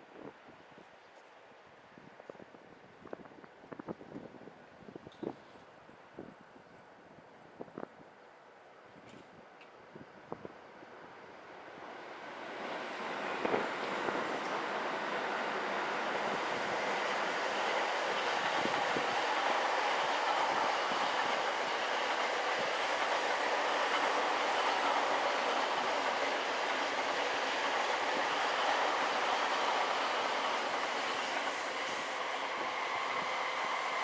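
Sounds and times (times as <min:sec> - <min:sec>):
train wheels on rails: 0:11.4 - 0:34.0.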